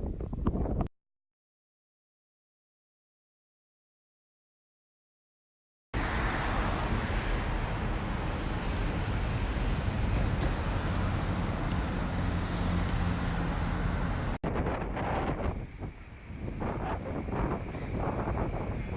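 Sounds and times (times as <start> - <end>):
wind buffeting microphone: 0.0 - 0.9, 6.2 - 18.9
river rushing roar: 6.0 - 18.9.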